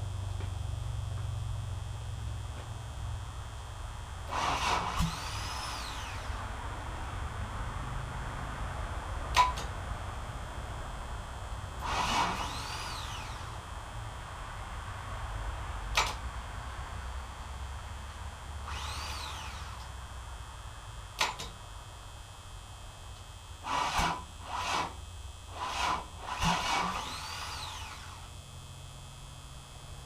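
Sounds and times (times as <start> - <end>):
starter whine: 0.0 - 8.2, 8.8 - 14.4, 15.9 - 16.2, 17.4 - 30.0
engine cranking bursts: 4.2 - 6.5, 11.8 - 13.8, 18.6 - 19.9, 23.6 - 28.4.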